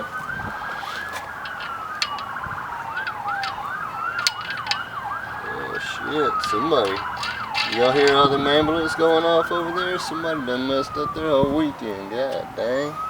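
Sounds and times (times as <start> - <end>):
ambulance siren wail: 0.0 - 13.0
siren yelp: 0.0 - 13.0
sharp clicks: 1.4 - 10.1.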